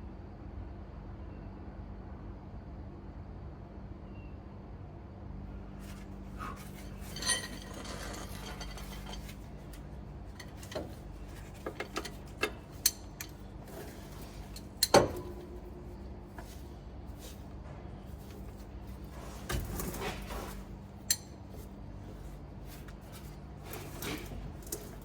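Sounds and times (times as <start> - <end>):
steady low hum: 0.0 - 25.0
metal tools clanking on steel: 5.9 - 15.8, 18.2 - 25.0.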